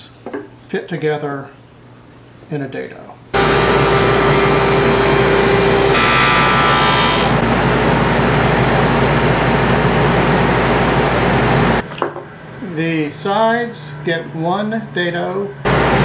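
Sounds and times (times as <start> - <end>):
table saw cutting wood: 3.4 - 11.8.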